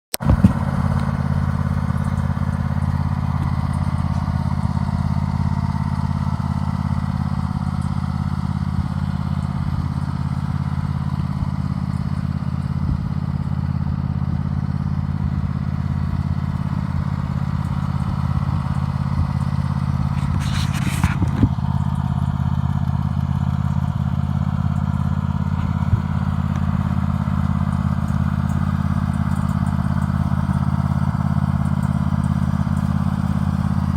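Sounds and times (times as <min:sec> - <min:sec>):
lawn mower engine running: 0:00.1 - 0:33.9
brief clatter: 0:20.1 - 0:21.7.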